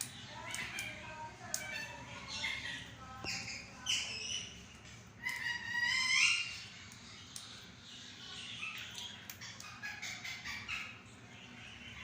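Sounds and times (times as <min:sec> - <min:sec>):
parrot squawking: 0:05.2 - 0:07.2, 0:08.0 - 0:12.0.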